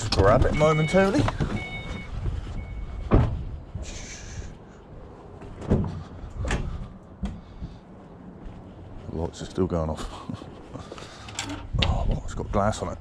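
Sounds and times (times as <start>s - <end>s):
van door clunking: 0.0s - 3.7s, 5.4s - 7.8s.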